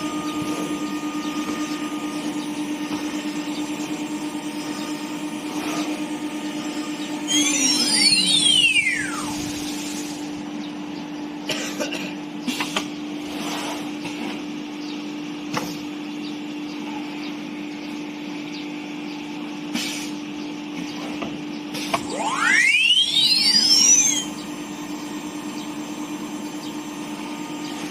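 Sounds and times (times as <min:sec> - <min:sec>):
router spindle whine winding down: 0:00.0 - 0:10.6, 0:21.9 - 0:27.9
steady low hum: 0:00.0 - 0:27.9.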